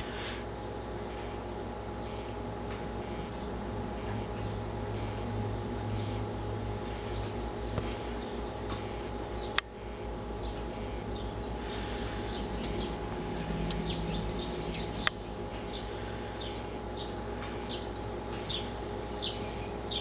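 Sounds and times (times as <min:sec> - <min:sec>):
steady low hum: 0:00.0 - 0:20.0
small bird chirping: 0:10.4 - 0:20.0.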